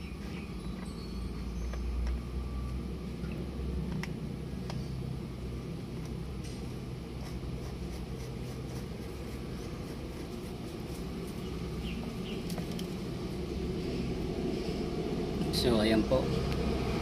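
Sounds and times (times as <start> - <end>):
low rumble: 8.9 - 17.0.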